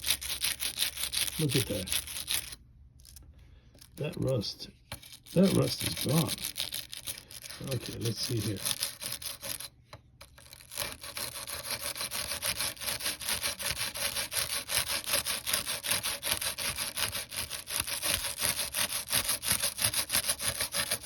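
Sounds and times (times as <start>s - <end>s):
rubbing on aluminum window frame: 10.6s - 21.0s.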